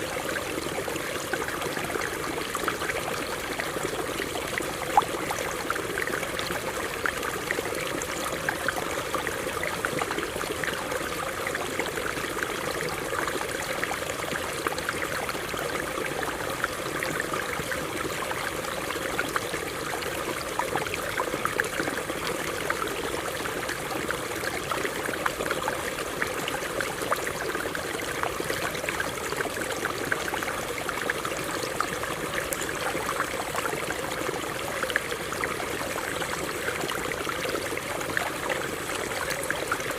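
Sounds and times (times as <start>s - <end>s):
stream babbling over rocks: 0.0s - 39.9s.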